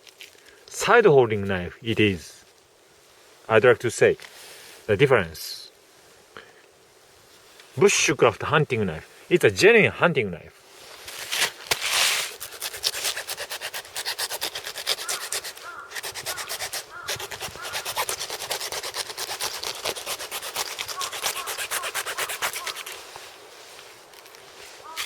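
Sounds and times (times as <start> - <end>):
knife scraping carcass: 11.0 - 23.2, 24.2 - 25.0.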